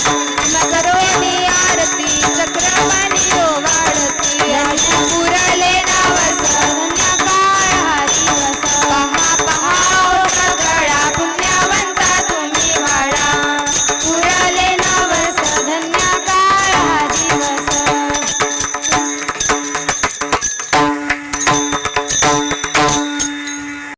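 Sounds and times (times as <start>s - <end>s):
girls singing: 0.0s - 18.6s
jingling hand cymbals: 0.0s - 23.9s
steady held instrumental tone: 0.0s - 23.9s.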